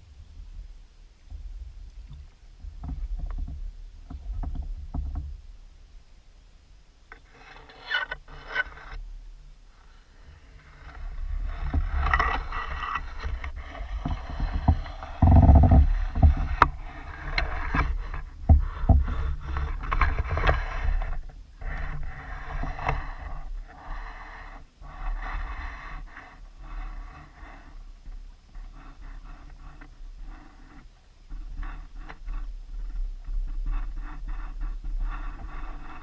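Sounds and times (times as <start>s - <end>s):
clicks and knocks on hull: 1.3s - 5.4s, 11.4s - 23.1s.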